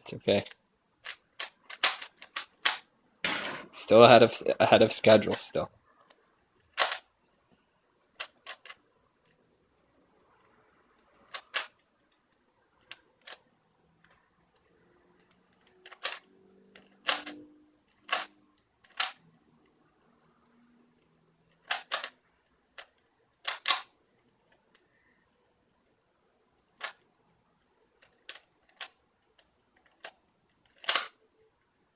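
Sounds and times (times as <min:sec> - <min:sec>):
puzzle cube clacking: 0:00.4 - 0:03.8, 0:28.0 - 0:31.2.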